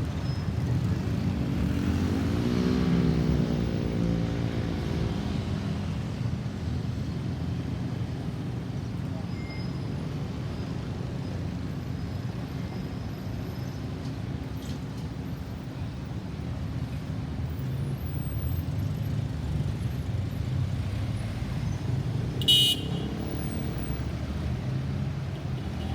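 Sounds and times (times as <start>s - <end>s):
road traffic rumble: 0.0s - 25.9s
vehicle horn toot: 22.4s - 23.2s.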